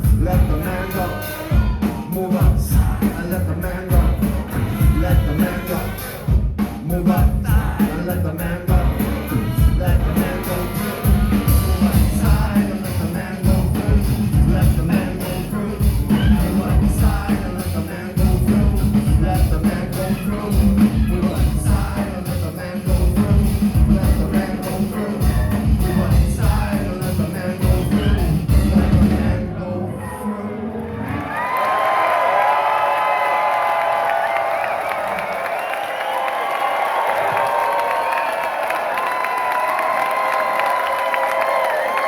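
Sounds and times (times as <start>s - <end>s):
live rock band playing: 0.0s - 29.6s.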